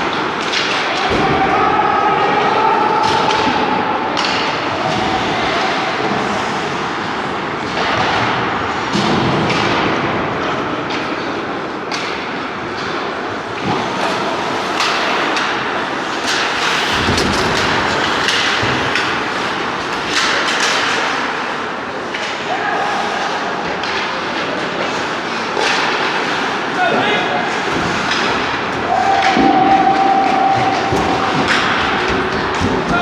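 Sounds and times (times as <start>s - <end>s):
sticks and puck clacking: 0.0s - 33.0s
skates scraping on ice: 10.6s - 33.0s.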